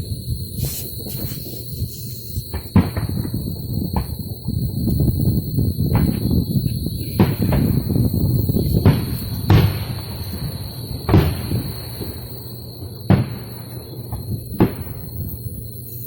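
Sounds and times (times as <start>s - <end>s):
faint high whine: 0.0s - 16.0s
distant sharp bangs echoing: 2.5s - 4.2s, 7.2s - 15.4s.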